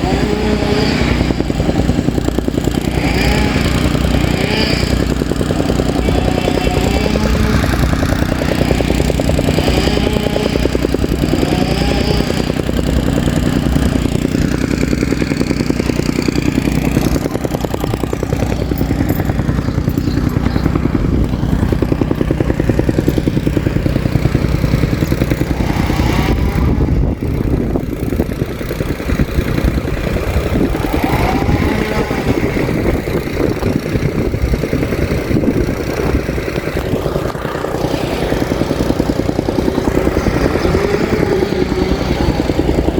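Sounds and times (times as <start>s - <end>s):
compactor engine drone: 0.0s - 42.9s
compactor pounding the ground: 0.0s - 42.9s.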